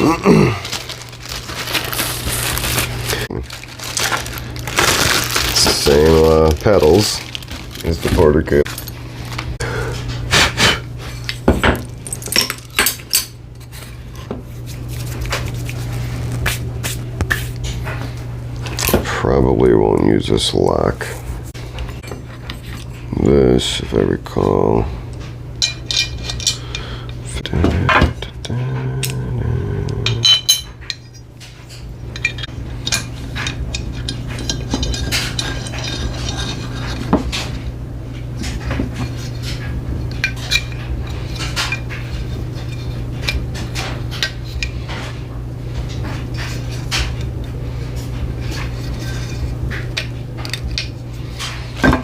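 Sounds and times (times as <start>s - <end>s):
steady low hum: 0.0s - 52.0s
metal parts clinking and knocking: 11.4s - 13.3s, 30.1s - 31.2s.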